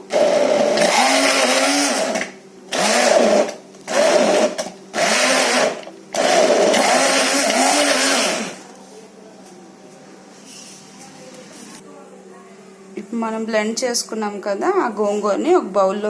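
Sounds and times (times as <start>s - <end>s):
electric blender grinding leaves: 0.0s - 8.7s.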